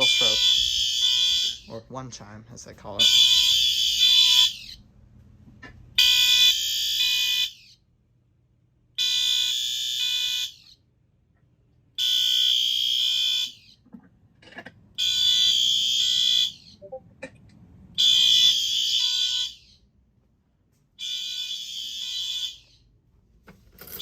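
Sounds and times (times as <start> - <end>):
fire alarm horns pulsing: 0.0 - 1.8, 3.0 - 4.8, 6.0 - 7.7, 9.0 - 10.7, 12.0 - 13.6, 15.0 - 17.0, 18.0 - 19.8, 21.0 - 22.8.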